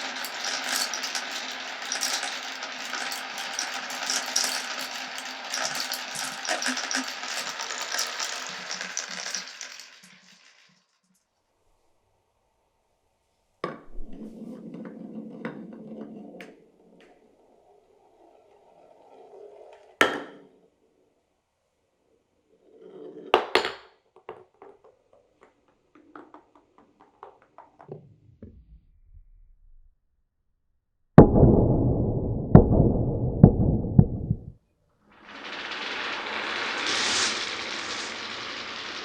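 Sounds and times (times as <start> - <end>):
marbles rolling on wooden track: 0.0 - 11.0, 13.9 - 20.6, 22.7 - 27.9, 35.2 - 39.0.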